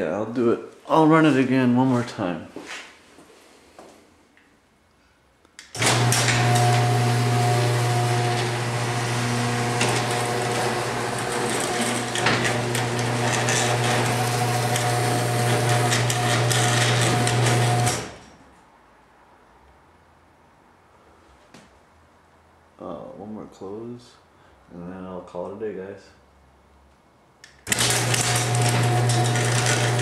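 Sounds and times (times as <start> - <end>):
garage door opener click: 5.6 - 18.4, 27.4 - 30.0
motor humming: 5.8 - 18.2, 27.7 - 30.0.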